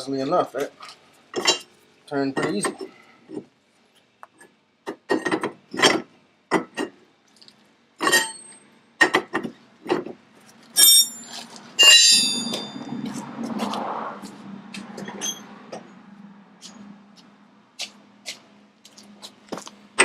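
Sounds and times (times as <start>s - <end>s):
metal hand tools clanking: 10.8s - 12.8s.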